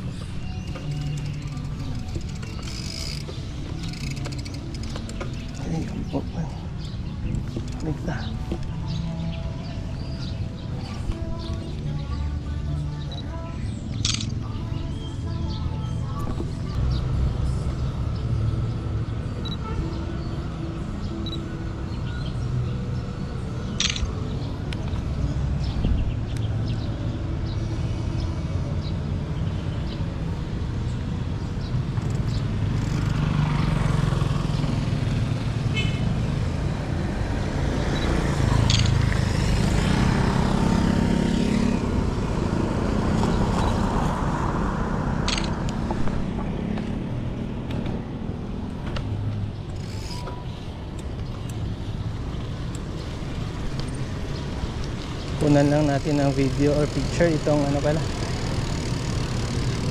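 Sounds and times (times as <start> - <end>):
road traffic passing: 0.0 - 59.9
sharp clicks: 0.4 - 5.9, 13.9 - 14.4, 23.8 - 24.1, 45.3 - 45.8, 54.8 - 59.9.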